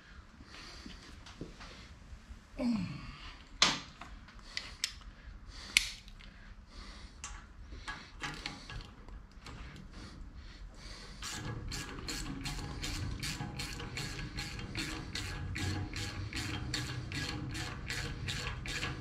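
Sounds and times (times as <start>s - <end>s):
small clicks of tools handled: 3.4s - 5.1s, 5.7s - 6.4s, 7.2s - 9.8s
metal knocks and clanks: 11.2s - 19.0s.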